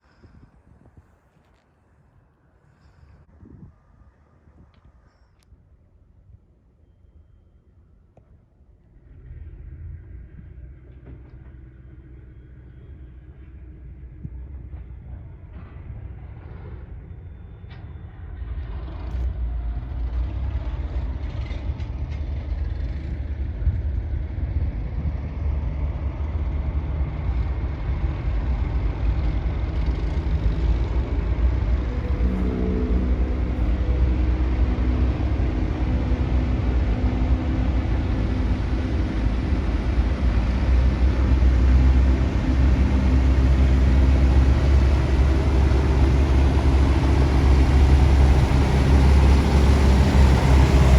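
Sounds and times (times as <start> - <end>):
boat engines rumbling: 25.8 - 50.9.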